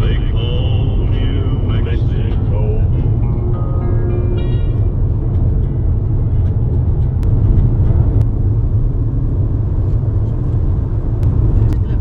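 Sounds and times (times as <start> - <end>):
car interior road rumble: 0.0 - 12.0.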